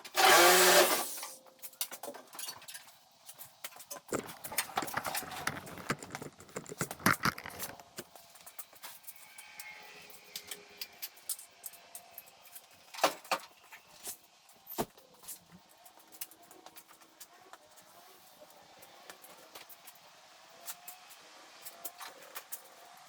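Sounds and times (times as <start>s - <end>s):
metallic clinking and clattering: 4.0s - 8.0s.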